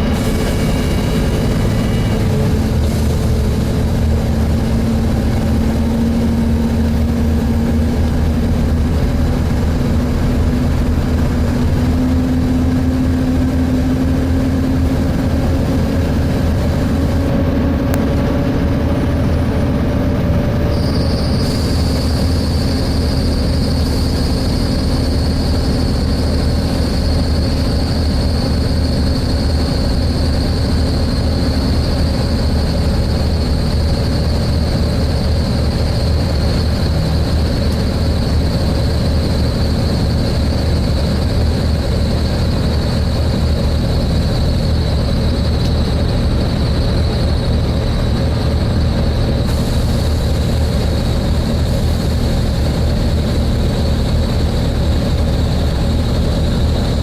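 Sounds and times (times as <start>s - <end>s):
bus engine drone: 0.0s - 57.0s
high-pitched screech: 20.6s - 26.4s.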